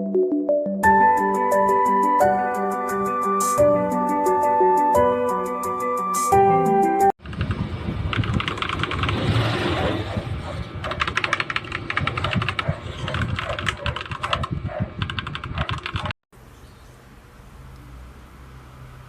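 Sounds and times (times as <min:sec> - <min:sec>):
mechanical keyboard typing: 0:07.2 - 0:09.2, 0:10.8 - 0:16.1.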